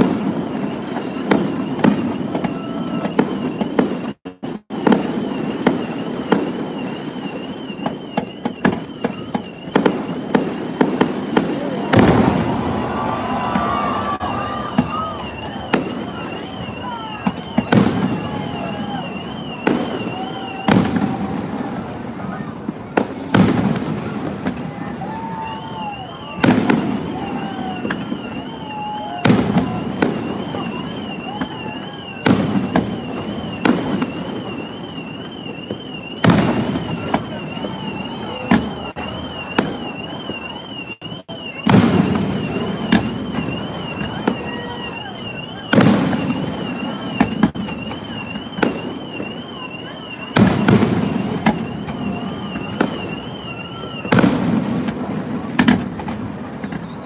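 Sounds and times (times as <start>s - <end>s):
fireworks booming: 0.0s - 57.0s.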